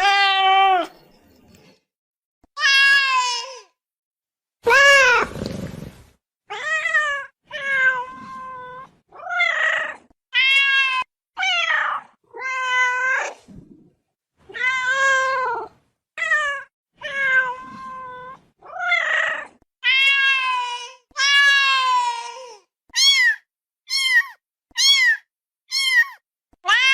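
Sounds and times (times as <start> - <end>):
wild cat meowing: 4.6 - 13.4.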